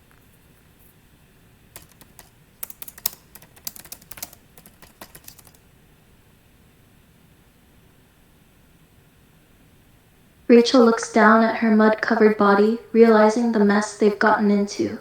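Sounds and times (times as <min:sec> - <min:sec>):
keyboard typing clicks: 0:01.8 - 0:05.6.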